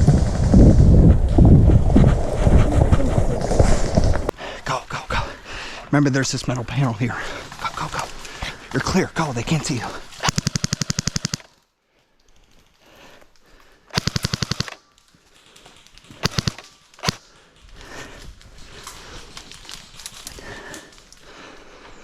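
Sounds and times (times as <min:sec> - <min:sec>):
airsoft gun firing bursts: 0:10.2 - 0:11.5, 0:14.0 - 0:14.8, 0:16.2 - 0:17.2.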